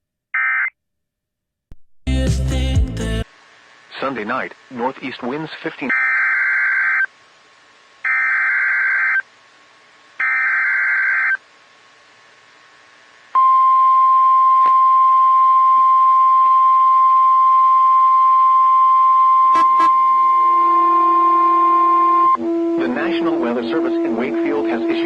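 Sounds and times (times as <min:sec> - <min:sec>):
steady warning alarm tone: 0:05.9 - 0:07.1, 0:08.0 - 0:09.2, 0:10.2 - 0:11.4, 0:13.4 - 0:25.0.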